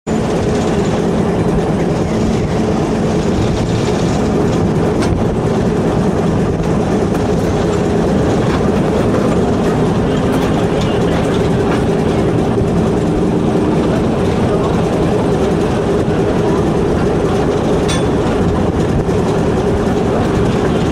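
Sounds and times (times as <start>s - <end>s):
diesel locomotive engine running: 0.1s - 20.9s
wheels clicking over rail joints: 0.1s - 20.9s.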